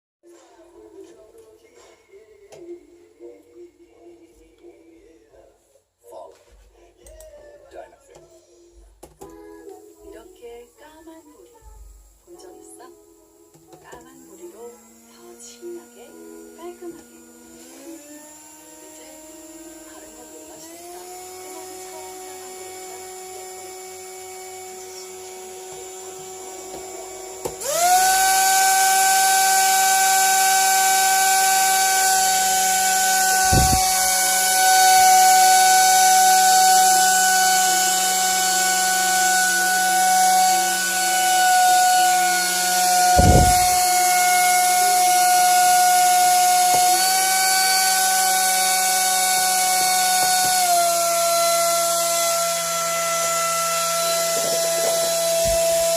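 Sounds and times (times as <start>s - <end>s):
electric motor whine: 9.4s - 55.9s
low thumps: 33.4s - 34.1s, 43.2s - 44.1s.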